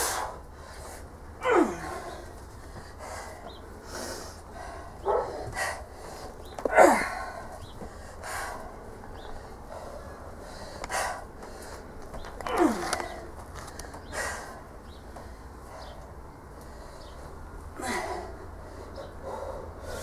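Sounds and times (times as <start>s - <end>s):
person grunting with exertion: 1.4s - 2.1s, 6.7s - 7.4s, 12.4s - 13.1s.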